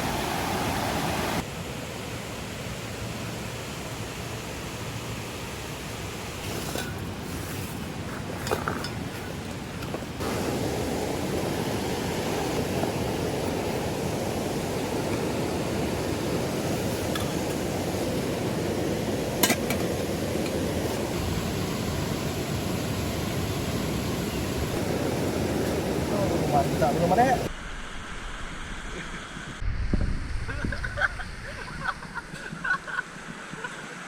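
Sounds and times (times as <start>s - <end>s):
river water rushing: 0.0s - 1.4s, 7.9s - 27.5s.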